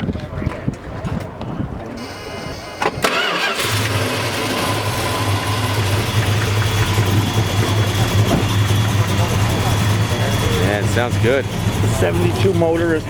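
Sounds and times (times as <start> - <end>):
car engine idling: 2.6 - 13.0
starter cranking: 2.8 - 12.8.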